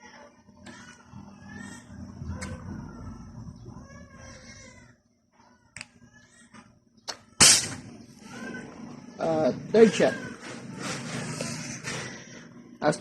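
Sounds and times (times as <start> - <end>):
air rifle shot crack: 7.4 - 7.8.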